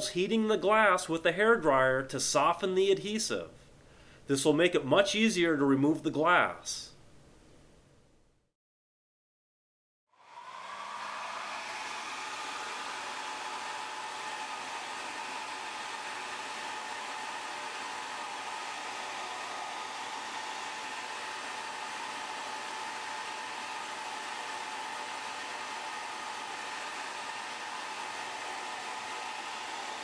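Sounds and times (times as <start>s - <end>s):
hair dryer running: 10.1s - 30.0s.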